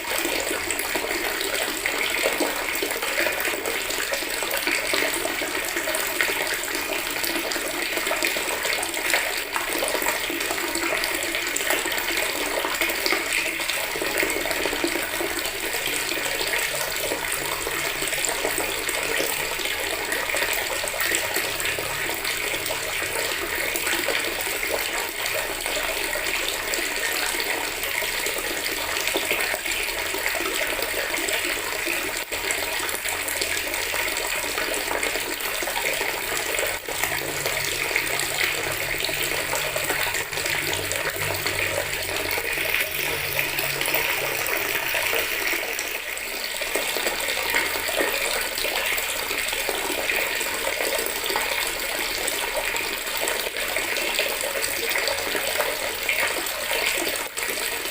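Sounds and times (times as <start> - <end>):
tap water running into bucket: 0.0 - 57.9.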